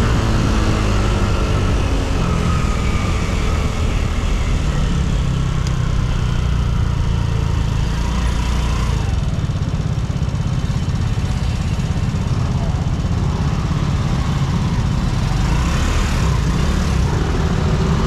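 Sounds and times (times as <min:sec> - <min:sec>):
wind rumble on microphone: 0:00.0 - 0:07.8
scooter engine running: 0:00.0 - 0:18.0.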